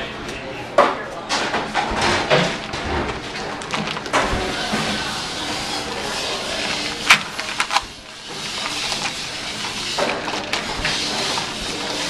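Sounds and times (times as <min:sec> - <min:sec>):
kitchen hum: 0:00.0 - 0:12.0.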